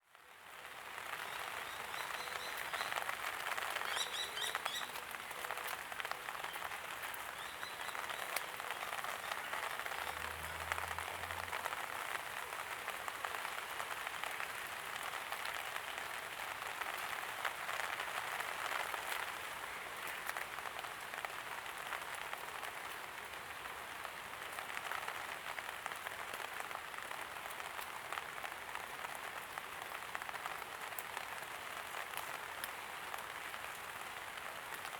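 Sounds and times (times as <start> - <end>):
light rain falling: 0.0 - 34.9
bird chirps: 3.8 - 5.0.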